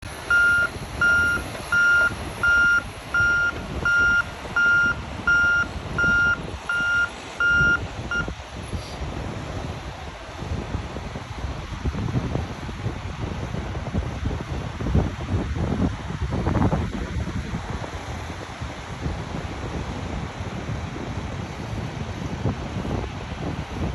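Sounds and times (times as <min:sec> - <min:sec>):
backup alarm beeping: 0:00.2 - 0:08.4.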